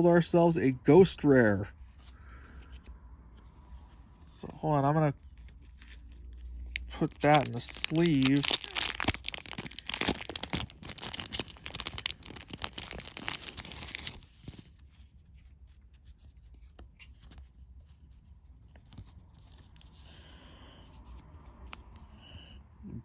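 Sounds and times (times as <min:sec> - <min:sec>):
plastic sleeve crinkling: 0:05.2 - 0:14.8.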